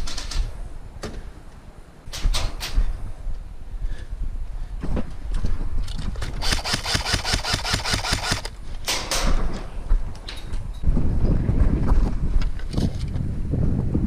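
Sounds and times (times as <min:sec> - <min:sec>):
airsoft gun full-auto burst: 0:06.4 - 0:08.5.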